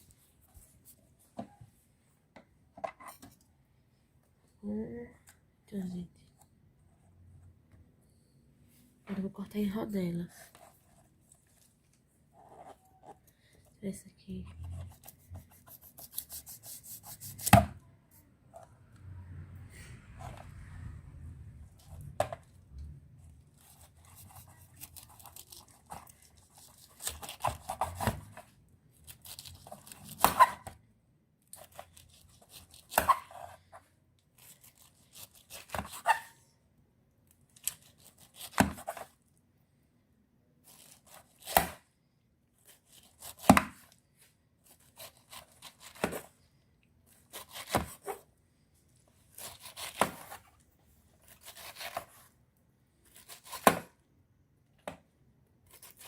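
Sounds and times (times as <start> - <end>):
knife slicing pineapple: 14.7 - 17.8, 23.6 - 28.4, 31.6 - 33.6, 34.4 - 36.4, 37.6 - 39.2, 42.6 - 43.9, 44.7 - 46.3, 47.1 - 48.2, 49.3 - 50.4, 51.2 - 52.3, 53.1 - 54.0.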